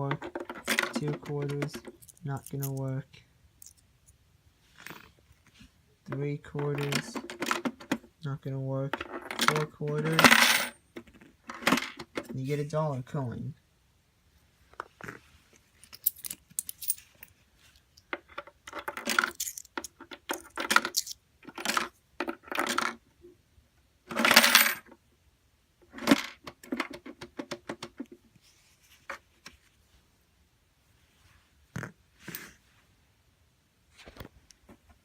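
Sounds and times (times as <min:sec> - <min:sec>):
coins clattering through vending machine: 0:09.4 - 0:10.7, 0:18.9 - 0:19.8, 0:24.1 - 0:24.8.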